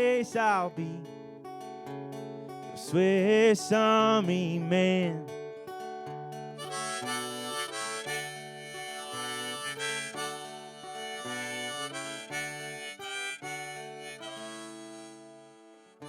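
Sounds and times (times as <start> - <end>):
acoustic guitar: 0.0 - 16.0
harmonica melody: 6.5 - 16.0.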